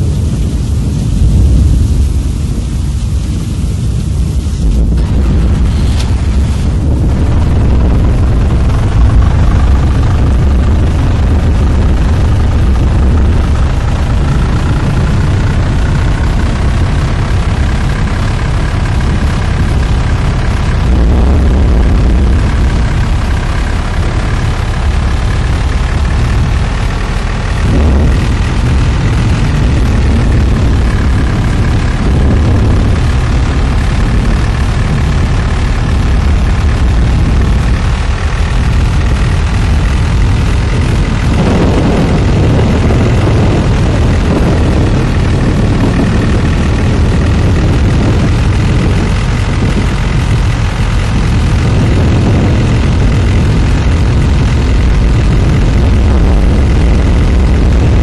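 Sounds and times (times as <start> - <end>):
heavy vehicle engine: 0.0 - 58.0
strong wind rumble: 0.0 - 58.0.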